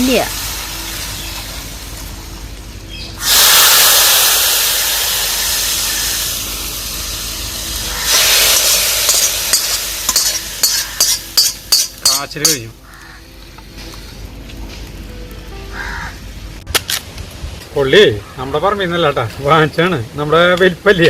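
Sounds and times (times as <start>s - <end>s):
hot oil sizzling in curry: 0.0s - 15.1s.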